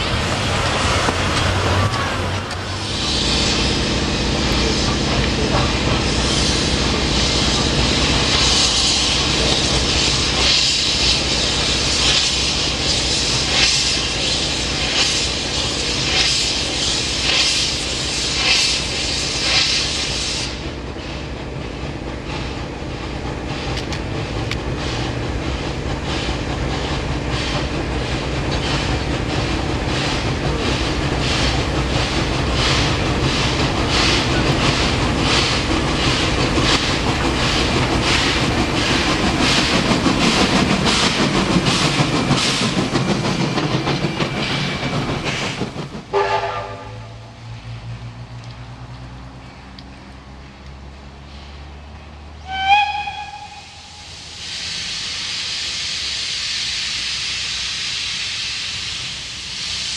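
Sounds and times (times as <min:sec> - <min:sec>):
steam hissing: 0:00.0 - 0:21.3, 0:22.2 - 0:47.3, 0:52.5 - 0:59.9.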